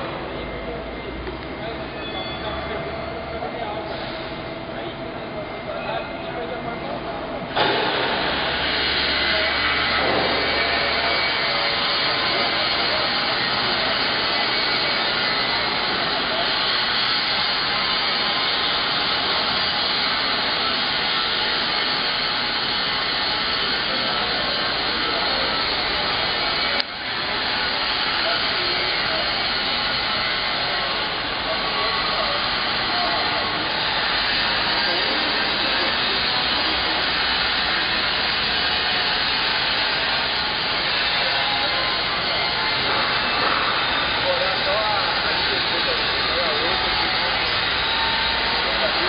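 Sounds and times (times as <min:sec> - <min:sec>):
plasma torch hissing: 0:07.6 - 0:26.4
plasma cutting torch hissing: 0:07.6 - 0:49.0.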